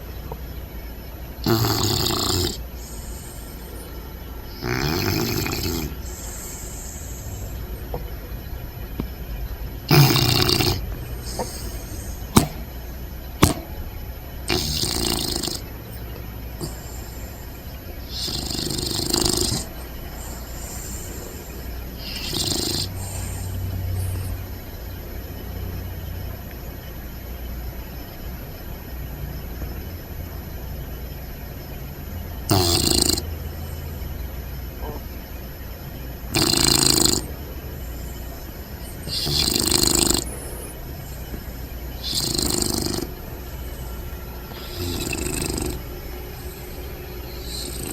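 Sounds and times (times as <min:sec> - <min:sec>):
puppy snoring: 0:01.4 - 0:08.0, 0:09.8 - 0:24.8, 0:32.4 - 0:33.4, 0:36.3 - 0:47.9
puppy snorting: 0:01.4 - 0:08.0, 0:09.8 - 0:24.6, 0:32.5 - 0:33.3, 0:36.3 - 0:47.9.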